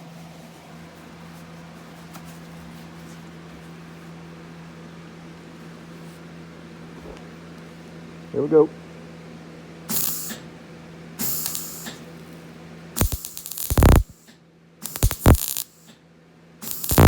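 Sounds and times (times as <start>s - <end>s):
welding arc crackling: 9.9s - 10.3s, 11.2s - 11.9s, 13.0s - 14.2s, 14.8s - 15.9s, 16.6s - 17.0s.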